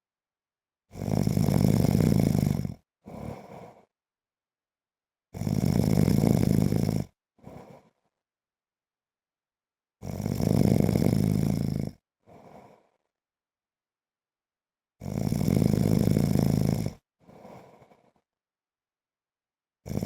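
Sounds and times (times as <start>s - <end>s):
man snoring: 0.9s - 3.9s, 5.4s - 8.1s, 10.0s - 13.0s, 15.0s - 18.2s.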